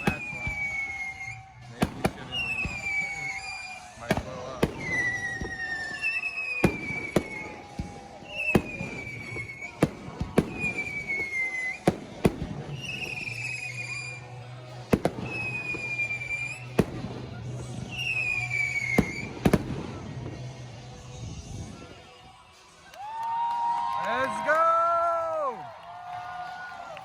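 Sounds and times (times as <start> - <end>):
fireworks banging: 0.0 - 22.0
whistling fireworks: 0.0 - 25.6.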